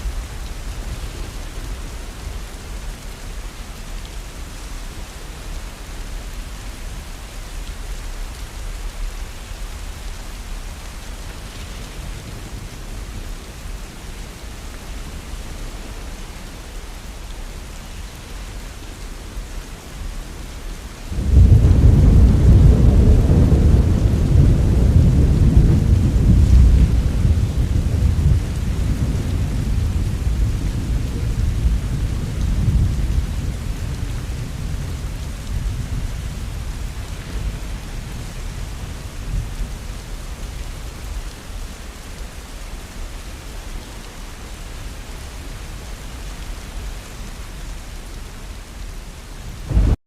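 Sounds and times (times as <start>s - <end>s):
rain falling: 0.0s - 50.0s
rolling thunder: 21.2s - 37.9s, 49.6s - 50.0s.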